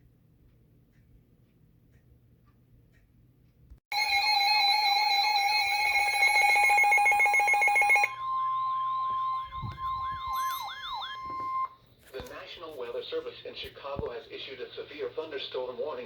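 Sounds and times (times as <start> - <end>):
electronic alarm tone buzzing: 3.9 - 11.8
falling warble warning tone: 4.0 - 11.8.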